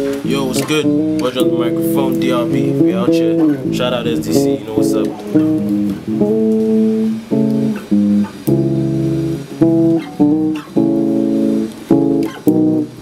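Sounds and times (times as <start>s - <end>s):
acoustic guitar chords: 0.0s - 13.0s.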